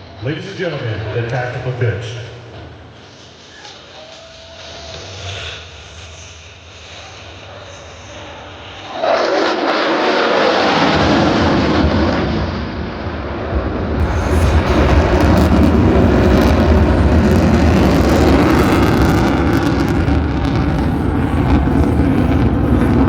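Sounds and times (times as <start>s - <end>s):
jet engine roaring past: 8.7s - 23.0s.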